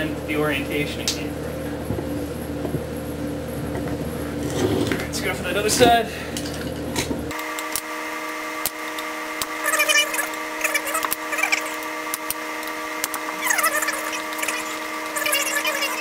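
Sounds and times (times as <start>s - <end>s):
power drill motor whining: 7.3s - 16.0s.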